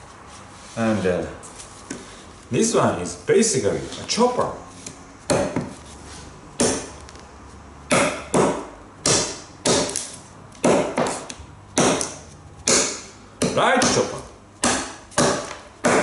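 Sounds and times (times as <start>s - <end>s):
hatchet chopping wood: 5.3s - 5.7s, 6.6s - 6.9s, 7.9s - 16.0s.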